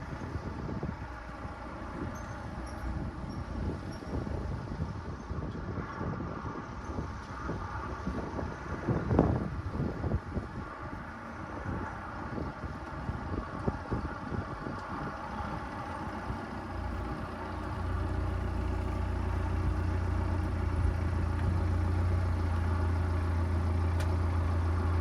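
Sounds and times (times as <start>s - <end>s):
car engine running: 10.1s - 25.0s.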